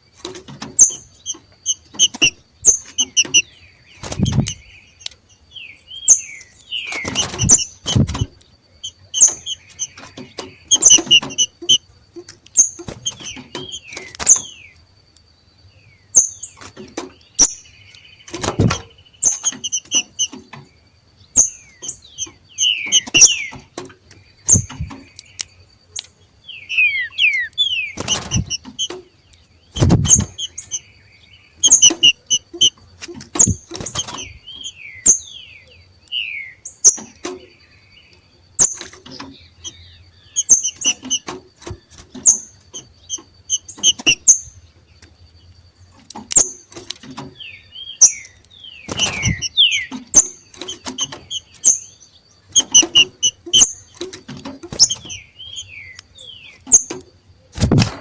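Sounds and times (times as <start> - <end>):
birds chipping and squeaking calls: 0.0 - 58.0
thumps: 4.0 - 4.6, 7.0 - 8.4, 18.3 - 20.5, 24.5 - 25.1, 26.7 - 29.0, 29.8 - 30.8, 31.6 - 34.6, 48.9 - 51.7, 52.6 - 55.2, 57.6 - 58.0.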